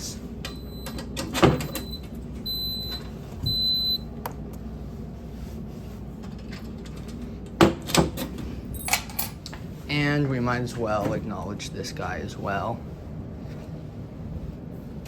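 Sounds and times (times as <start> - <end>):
oven control panel beeping: 0.4 - 4.1.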